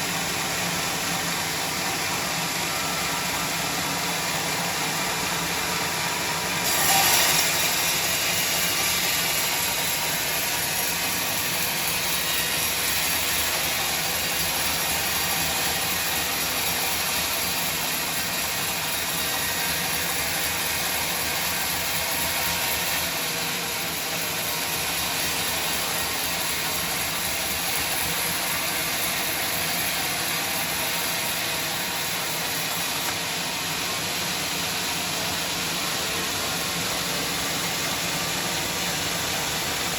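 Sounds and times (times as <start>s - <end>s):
bandsaw cutting timber: 5.8s - 33.7s.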